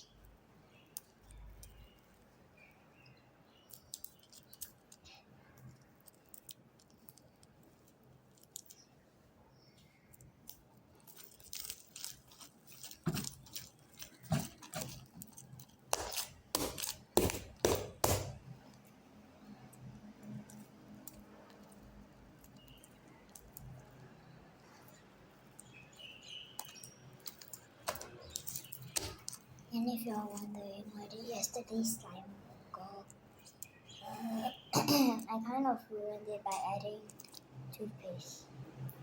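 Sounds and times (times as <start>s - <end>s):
wet crackling snaps: 24.8s - 30.7s.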